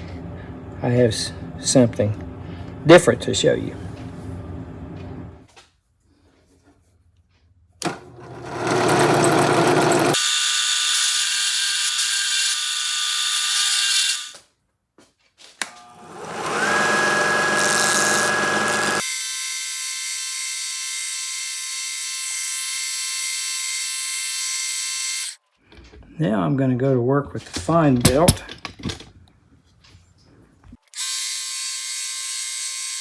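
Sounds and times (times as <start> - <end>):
electric belt sander sanding metal: 7.8 - 14.4, 15.7 - 19.1.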